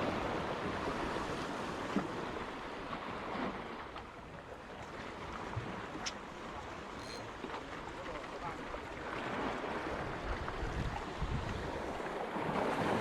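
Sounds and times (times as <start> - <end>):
wind noise on microphone: 10.2 - 13.0.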